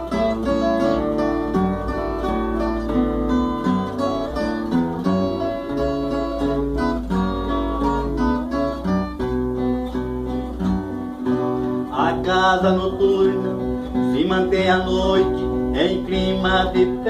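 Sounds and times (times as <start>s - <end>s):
acoustic guitars strumming: 0.0s - 17.0s
bass line: 0.0s - 17.0s.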